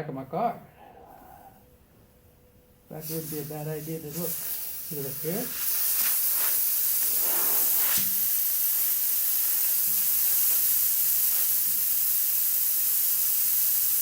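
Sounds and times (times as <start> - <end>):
air hissing from tire: 2.9 - 14.0.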